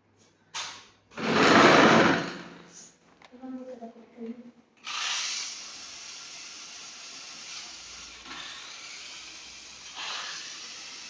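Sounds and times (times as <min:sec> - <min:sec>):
toy car motor whirring: 0:04.8 - 0:11.0.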